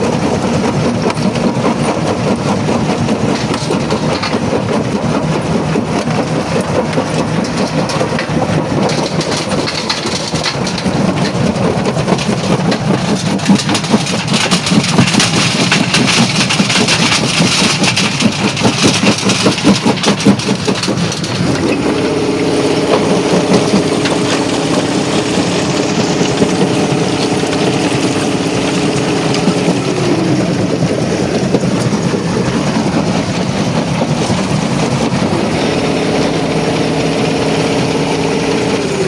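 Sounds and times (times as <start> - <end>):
jaw crusher knocking and rattling: 0.0 - 39.0
steady hum: 21.4 - 38.8.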